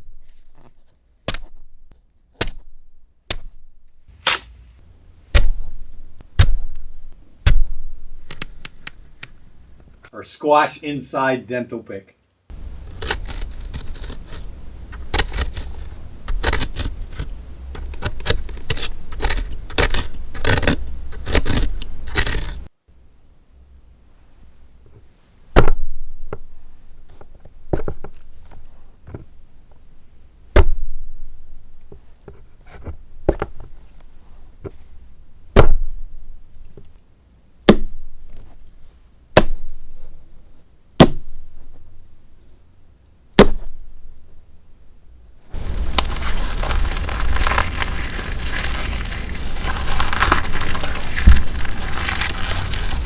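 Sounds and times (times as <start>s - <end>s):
sharp stabs or chops: 2.4s - 2.7s, 3.3s - 3.6s, 4.2s - 5.7s, 12.9s - 22.7s, 41.0s - 41.3s, 43.4s - 43.7s, 45.6s - 53.0s
wet crackling and tearing vegetables: 12.5s - 22.7s, 45.5s - 53.0s
small ticks and scrapes: 12.8s - 22.7s, 45.5s - 53.0s.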